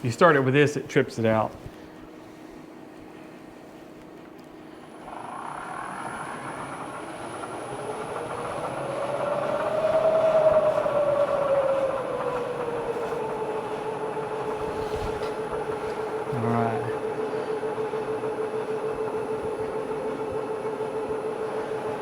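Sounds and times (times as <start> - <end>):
milling machine spindle whine: 4.5 - 22.0.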